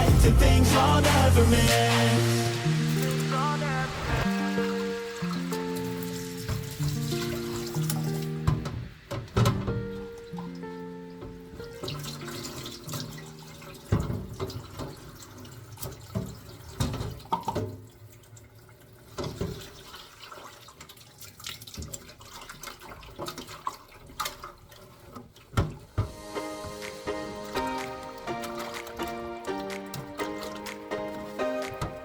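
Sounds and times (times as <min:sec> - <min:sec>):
held music notes: 0:00.0 - 0:12.8, 0:26.0 - 0:32.0
tap water running into sink: 0:04.3 - 0:32.0.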